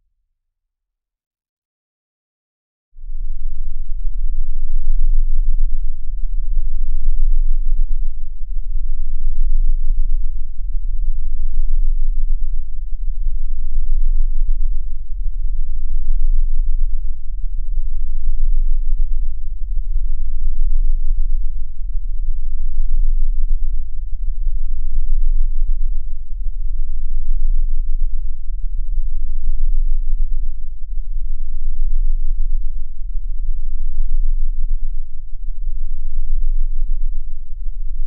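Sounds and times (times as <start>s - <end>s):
deep rumbling drone: 3.0s - 38.0s
faint high whine: 3.1s - 38.0s.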